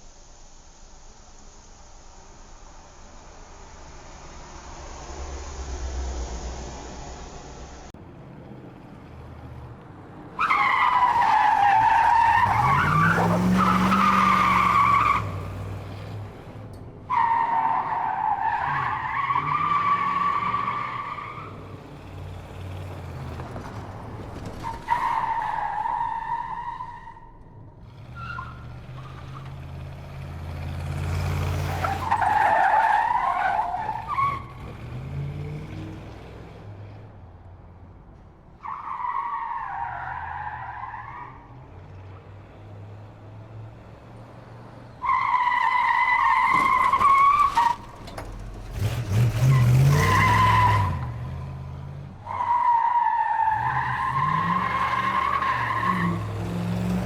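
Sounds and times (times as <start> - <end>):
engine rumble: 0.0 - 57.0
car tyres squealing: 9.3 - 36.9, 38.5 - 42.5, 44.1 - 57.0.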